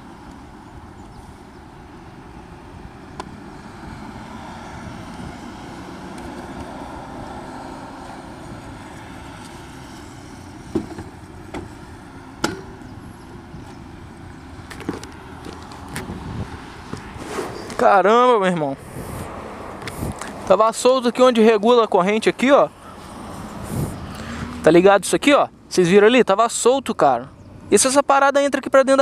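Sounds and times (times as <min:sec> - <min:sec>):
traffic rumble: 0:00.0 - 0:29.0
sharp clicks and knocks: 0:12.4 - 0:12.8.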